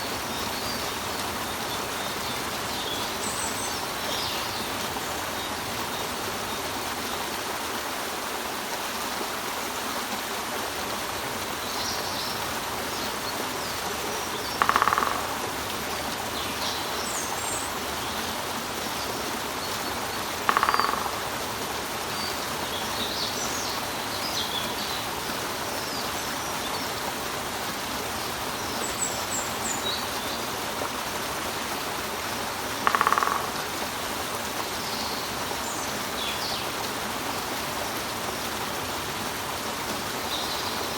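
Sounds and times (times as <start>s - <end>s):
water falling over rock: 3.8s - 26.4s, 29.2s - 35.4s
woodpecker rattles: 14.1s - 15.8s, 20.4s - 21.4s, 32.8s - 33.8s
small birds chirping: 19.0s - 21.4s.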